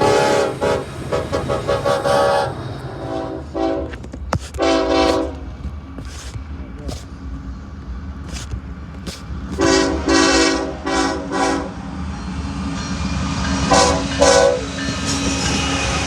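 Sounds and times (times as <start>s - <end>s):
locomotive air horn blasts: 0.0s - 6.3s, 9.6s - 11.8s, 13.7s - 14.7s
low train rumble: 0.0s - 16.0s.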